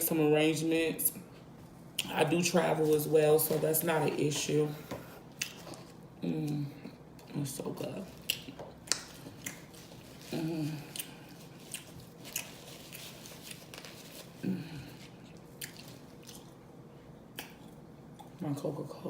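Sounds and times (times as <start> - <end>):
chewing and biting pizza: 8.1 - 14.4, 15.1 - 16.7
person humming: 10.2 - 11.0.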